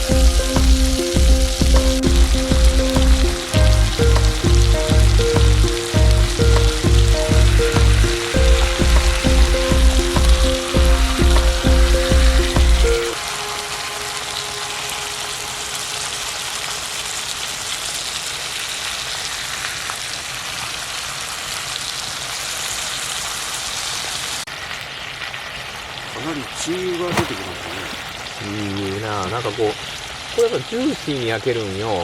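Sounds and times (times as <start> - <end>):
music with bass beat: 0.0 - 13.2
meat sizzling on a griddle: 0.0 - 27.0.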